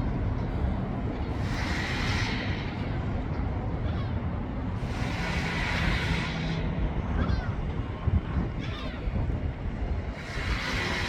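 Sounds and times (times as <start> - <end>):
wind buffeting microphone: 0.0 - 11.0
hissing wind gusts: 4.4 - 11.0.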